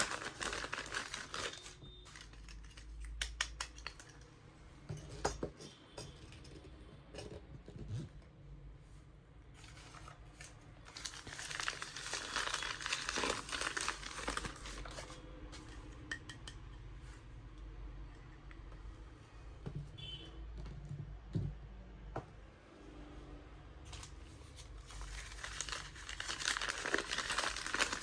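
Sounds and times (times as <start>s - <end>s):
packaging crinkling: 0.0s - 3.1s, 9.7s - 15.2s, 24.0s - 28.0s.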